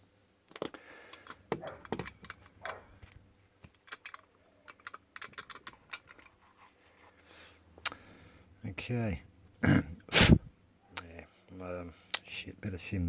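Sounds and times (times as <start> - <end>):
metal clicks and taps of tools: 0.5 - 6.3.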